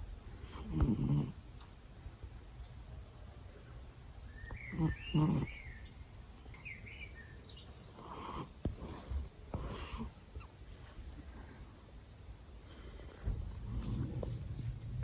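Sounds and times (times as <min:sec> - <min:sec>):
cat snoring: 0:00.4 - 0:01.4, 0:04.7 - 0:05.5, 0:07.9 - 0:10.2, 0:13.2 - 0:14.7.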